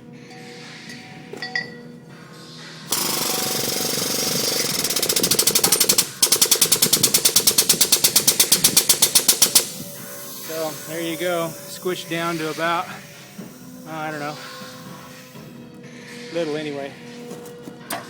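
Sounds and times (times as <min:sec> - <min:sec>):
hydraulic pump hiss: 0:02.9 - 0:17.1
pneumatic pump chatter: 0:02.9 - 0:18.0.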